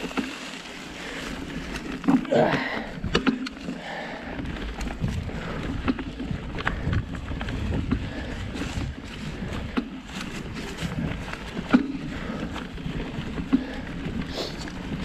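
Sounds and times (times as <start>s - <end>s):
bike clicks and rattles: 0.0s - 15.0s
bike tyres rumbling over stones: 0.0s - 15.0s
wind on microphone: 4.8s - 9.8s.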